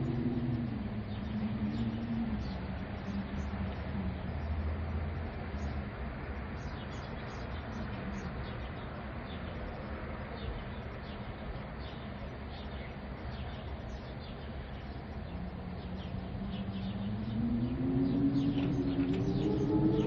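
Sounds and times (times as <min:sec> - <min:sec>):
low moaning wind gust: 0:00.0 - 0:06.6, 0:13.8 - 0:20.0.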